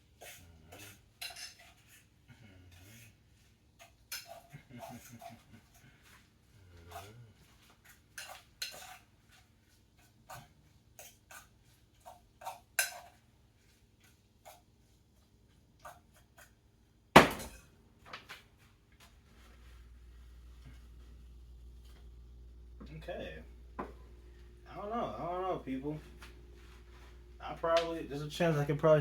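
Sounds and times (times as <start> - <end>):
utensils tapping pots and dishes: 0.2 - 1.8, 12.4 - 13.1
faint low hum: 19.1 - 29.0.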